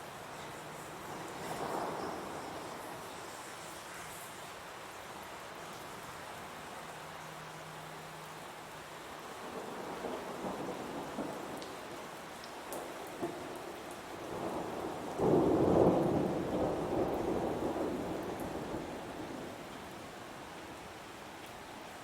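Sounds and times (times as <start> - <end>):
heavy rain falling: 0.0 - 22.0
thunder rumbling: 1.1 - 3.3, 9.4 - 12.0, 12.8 - 20.0.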